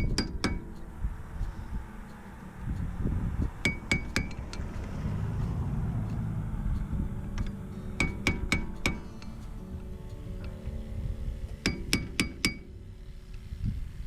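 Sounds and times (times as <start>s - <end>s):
screwdriver tapping metal: 0.0s - 0.9s, 3.4s - 5.5s, 6.1s - 9.6s, 11.5s - 12.7s
wind rumble on microphone: 0.0s - 14.0s.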